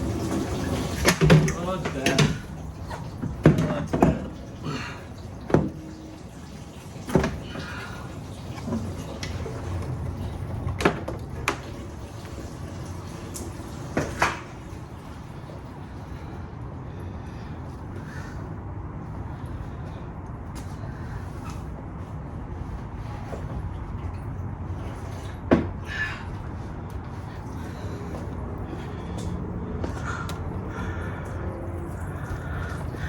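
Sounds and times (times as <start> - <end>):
tools knocking and clanking on metal: 1.1 - 2.5, 3.2 - 4.4.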